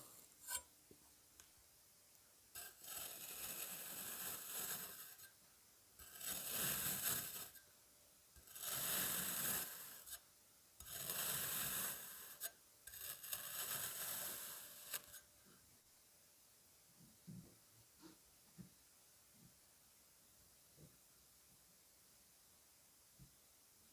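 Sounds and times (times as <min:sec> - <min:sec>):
knife cutting kinetic sand: 0:02.6 - 0:05.4, 0:06.0 - 0:07.7, 0:08.4 - 0:10.2, 0:10.8 - 0:15.3.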